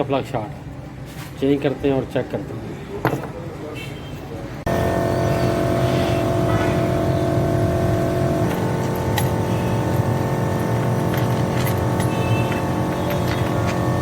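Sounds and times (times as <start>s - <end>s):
engine running with whine: 4.7s - 14.0s.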